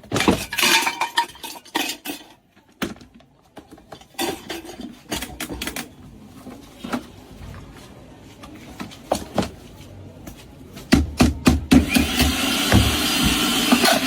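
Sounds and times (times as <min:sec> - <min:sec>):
metal objects clinking: 0:00.2 - 0:02.4.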